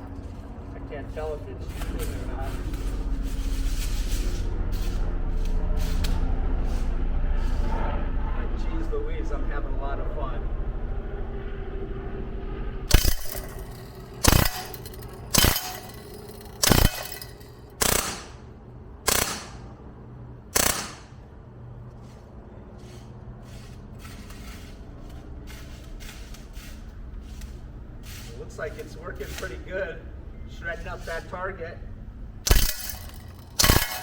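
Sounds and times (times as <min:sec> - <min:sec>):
bb gun shots: 0:14.2 - 0:16.0, 0:16.6 - 0:17.2, 0:17.8 - 0:18.4, 0:19.1 - 0:19.7, 0:20.6 - 0:21.2, 0:32.4 - 0:34.0.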